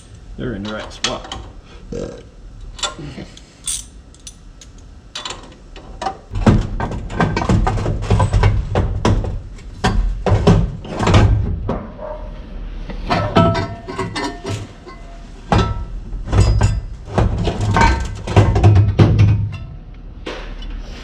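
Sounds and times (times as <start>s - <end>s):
metal clanks and knocks: 5.2s - 12.1s, 13.0s - 20.7s.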